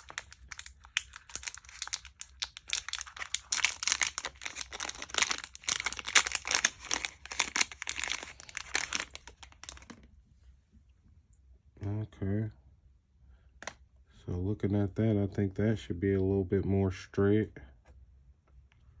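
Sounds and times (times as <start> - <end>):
packaging crinkling and tearing: 0.0 - 10.1.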